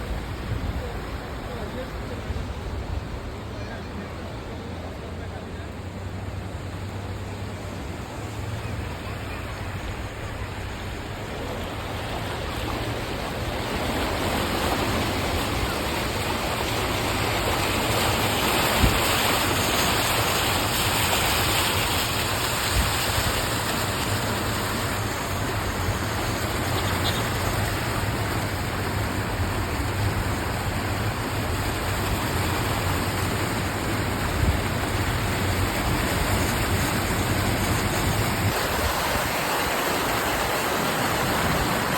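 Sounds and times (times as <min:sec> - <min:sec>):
heavy rain rushing: 0:00.0 - 0:41.9.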